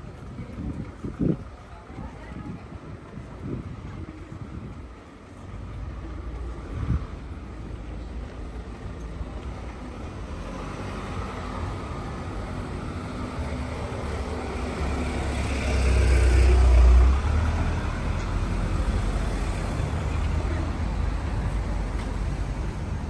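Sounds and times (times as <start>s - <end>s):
street traffic: 0.0s - 23.0s
motor vehicle passing: 10.0s - 23.0s.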